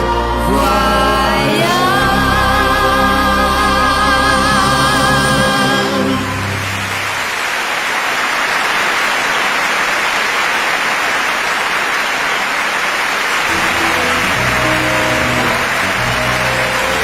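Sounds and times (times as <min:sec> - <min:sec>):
music: 0:00.0 - 0:07.0, 0:13.5 - 0:17.0
audience applauding: 0:06.2 - 0:17.0.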